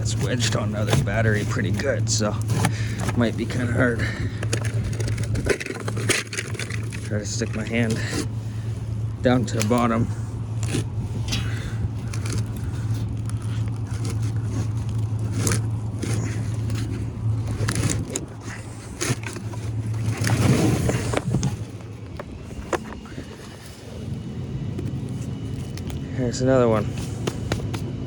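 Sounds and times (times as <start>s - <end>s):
heavy battery knocking and scraping: 0.0s - 28.0s
steady low hum: 0.0s - 28.0s.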